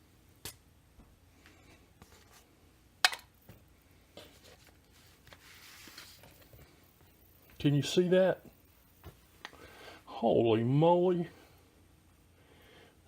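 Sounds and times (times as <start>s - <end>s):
soft rustle: 3.8s - 7.9s.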